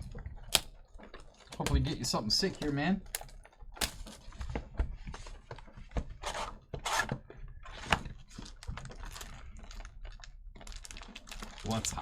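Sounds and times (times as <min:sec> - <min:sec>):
card packs being opened: 0:00.5 - 0:04.2.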